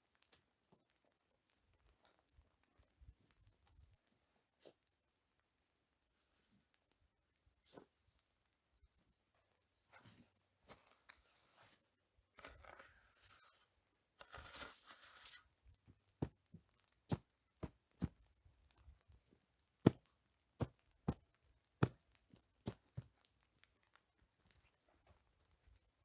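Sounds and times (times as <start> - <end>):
tearing rustling noise: 12.4 - 15.6.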